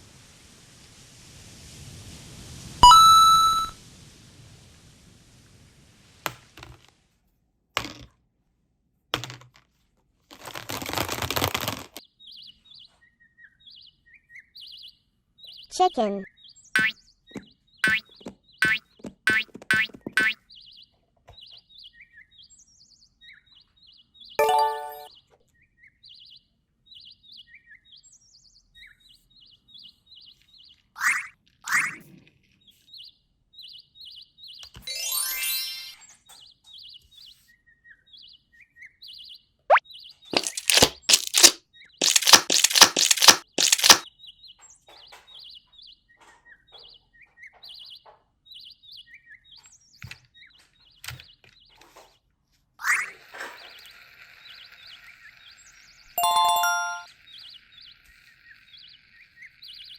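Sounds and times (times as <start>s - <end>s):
brief pitched tone: 2.8s - 3.8s, 24.4s - 25.1s, 56.2s - 57.1s
sticky slime crackling: 40.4s - 44.0s.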